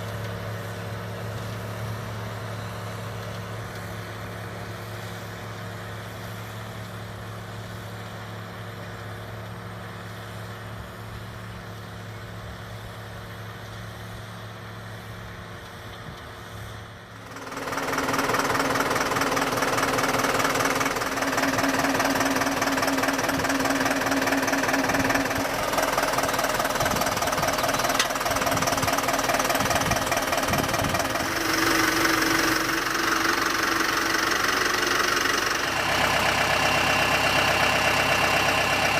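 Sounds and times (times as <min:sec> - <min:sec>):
machine engine humming: 0:00.0 - 0:38.9
loud mechanical clatter: 0:17.2 - 0:38.9.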